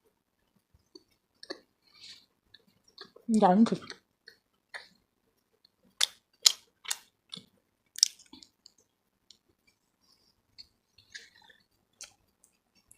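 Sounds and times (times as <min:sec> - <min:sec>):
person chewing food: 0:00.5 - 0:12.9.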